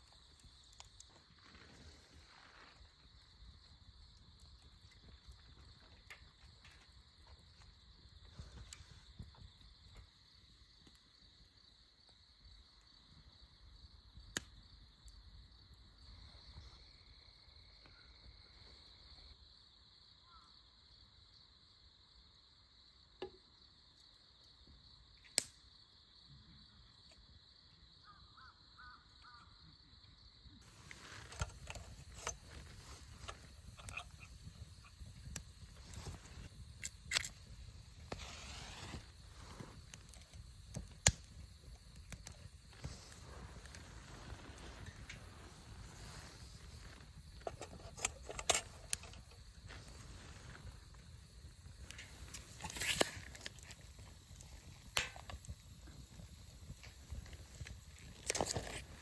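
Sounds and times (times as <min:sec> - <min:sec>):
crickets chirring: 0:00.0 - 0:59.0
rustling hiss: 0:30.6 - 0:59.0.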